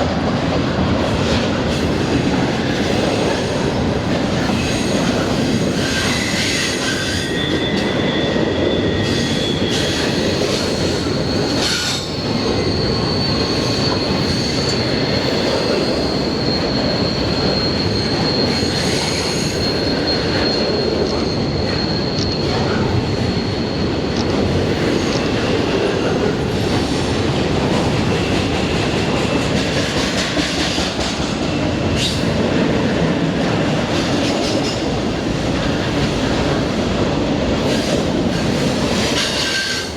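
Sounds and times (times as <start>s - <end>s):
train wheels rumbling on rails: 0.0s - 39.9s
high-pitched wheel squeal: 5.8s - 10.3s, 11.2s - 23.9s.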